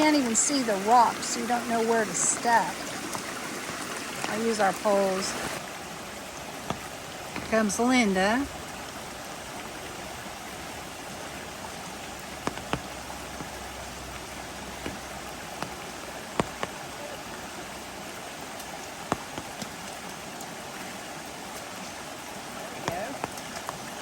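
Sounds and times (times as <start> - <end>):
steady rain falling: 0.0 - 24.0
sharp close taps: 12.4 - 13.6, 14.8 - 16.8, 19.1 - 19.7.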